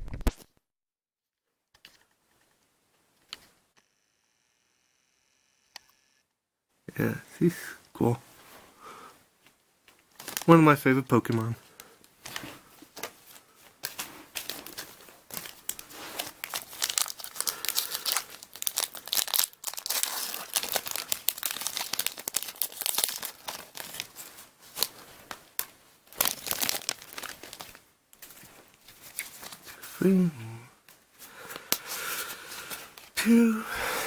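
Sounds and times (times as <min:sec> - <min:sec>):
foil wrapper crinkling and tearing: 0:10.2 - 0:10.6, 0:13.8 - 0:29.8.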